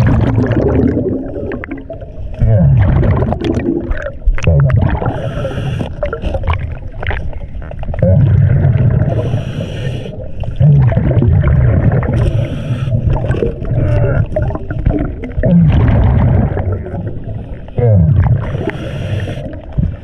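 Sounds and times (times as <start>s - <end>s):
exhaled bubbles rumbling: 0.0s - 20.0s
regulator hissing inhale: 5.1s - 6.3s, 9.1s - 10.5s, 12.2s - 13.2s, 18.5s - 19.8s.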